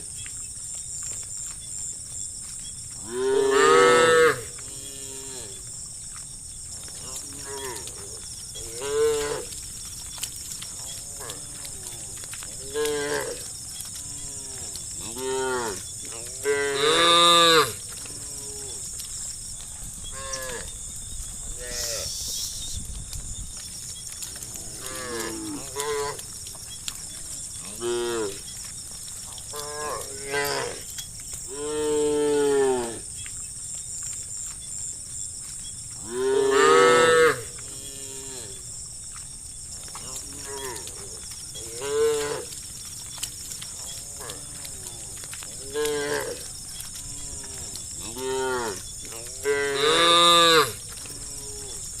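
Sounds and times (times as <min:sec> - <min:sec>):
steady high hiss: 0:21.7 - 0:22.8.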